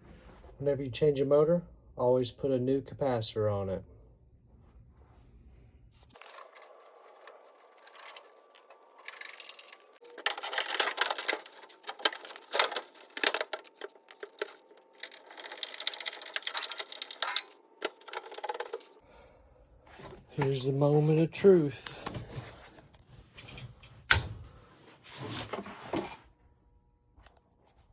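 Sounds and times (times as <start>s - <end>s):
hand tools clicking and rattling: 6.2s - 19.0s.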